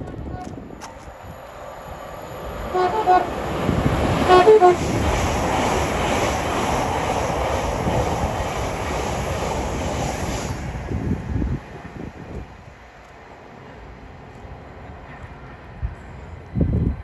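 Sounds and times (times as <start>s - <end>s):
two-note train horn: 0.0s - 0.6s, 2.7s - 3.4s, 4.2s - 4.9s
train wheels rushing on track: 0.0s - 17.0s.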